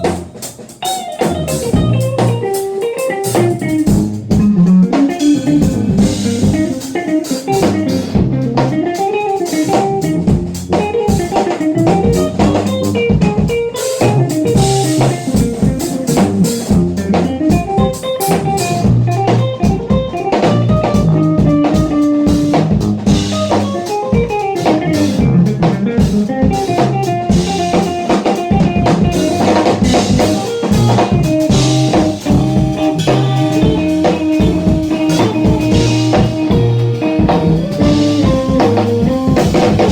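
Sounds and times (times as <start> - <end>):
drum kit groove: 0.0 - 39.9
guitar melody: 0.0 - 39.9
tuba bass line: 29.2 - 39.9.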